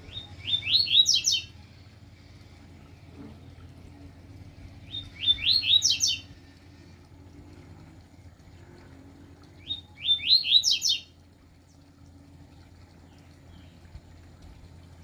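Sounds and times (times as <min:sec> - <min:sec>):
songbird singing: 0:00.0 - 0:01.6, 0:04.8 - 0:06.4, 0:09.5 - 0:11.8, 0:13.0 - 0:14.0.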